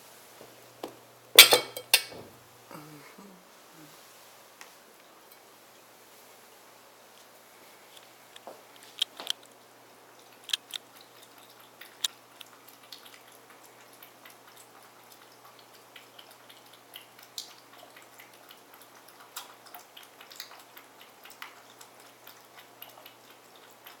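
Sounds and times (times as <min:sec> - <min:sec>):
pets chewing food: 0:07.1 - 0:24.0.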